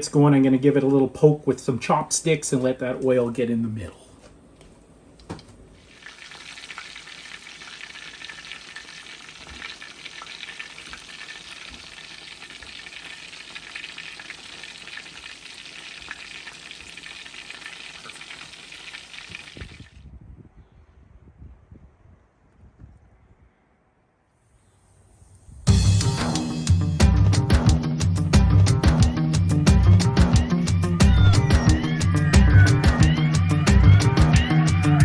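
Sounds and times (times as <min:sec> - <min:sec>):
chicken deep-frying in oil: 0:05.8 - 0:20.0.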